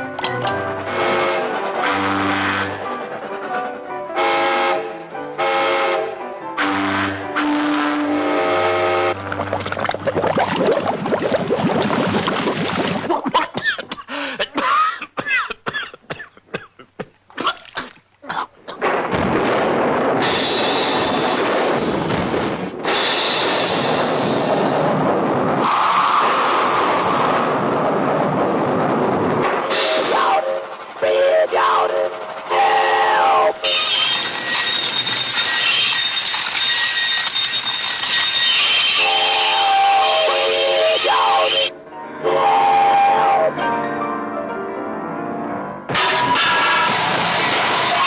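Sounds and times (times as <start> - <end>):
train whistle toots: 0.8 - 2.9, 4.2 - 9.2, 29.7 - 43.6
steam hiss: 22.8 - 28.0, 29.5 - 41.7
cartoon clattering: 29.5 - 37.7.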